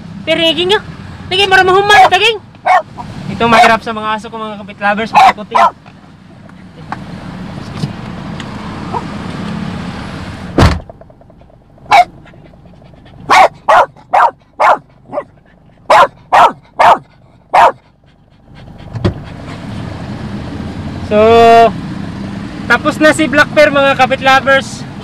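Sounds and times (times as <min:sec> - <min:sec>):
dog barking: 0:02.6 - 0:03.1, 0:05.1 - 0:05.8, 0:11.9 - 0:12.2, 0:13.2 - 0:17.8
heavy thump: 0:10.6 - 0:11.6, 0:18.9 - 0:19.2.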